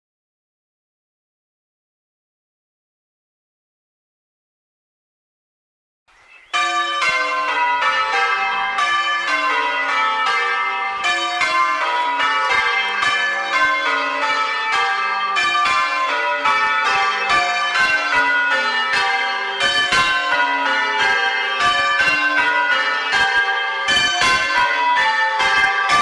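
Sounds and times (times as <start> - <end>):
church bells ringing: 6.5 - 26.0.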